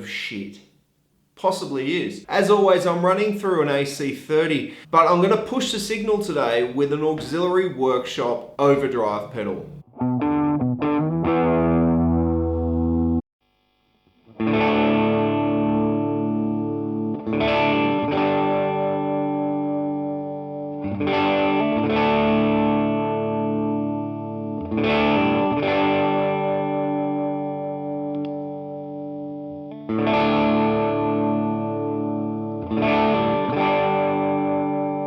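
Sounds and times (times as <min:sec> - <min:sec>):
distorted electric guitar chords: 0:09.6 - 0:35.0.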